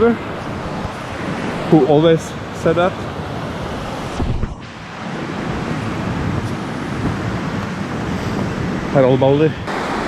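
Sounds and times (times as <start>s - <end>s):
river rushing over rocks: 9.7s - 10.0s.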